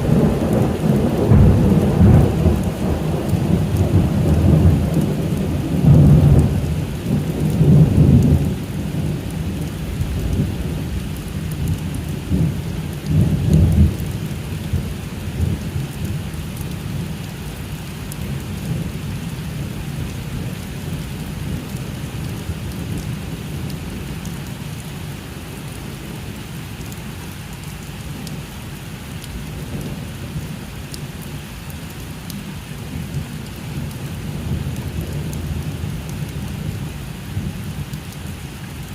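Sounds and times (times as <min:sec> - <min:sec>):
thunder rolling: 0:00.0 - 0:05.0
steady rain: 0:00.0 - 0:38.9.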